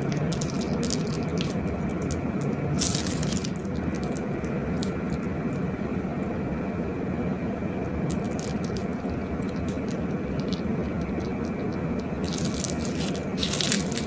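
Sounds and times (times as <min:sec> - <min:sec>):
slime clicking and crackling: 0:00.0 - 0:05.7, 0:08.0 - 0:14.0
steady rumbling noise: 0:00.0 - 0:14.0.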